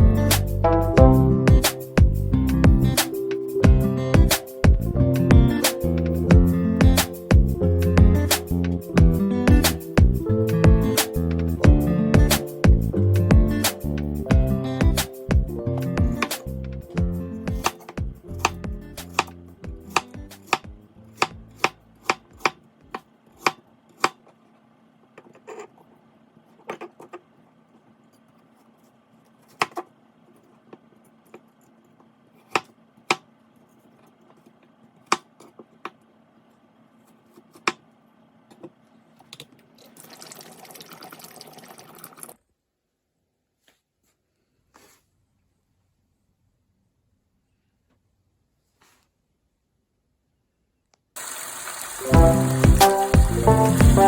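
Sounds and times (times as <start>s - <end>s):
knife chopping on cutting board: 17.5s - 24.2s, 29.6s - 29.9s, 32.4s - 33.3s
hiss: 51.2s - 54.0s.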